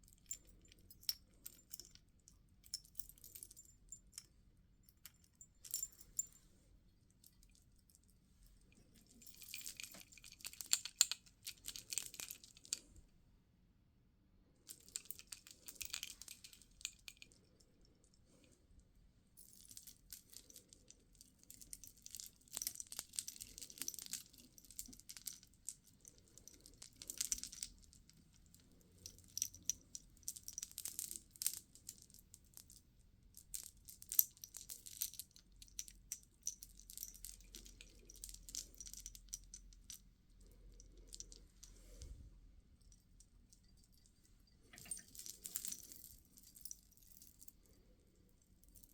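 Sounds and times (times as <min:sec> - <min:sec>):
beads clicking and rattling: 0:09.1 - 0:12.9, 0:21.5 - 0:40.0, 0:43.5 - 0:47.6.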